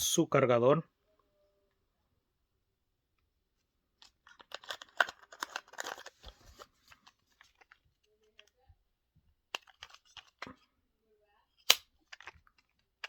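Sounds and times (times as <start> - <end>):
plastic packaging crinkling: 4.2 - 7.8.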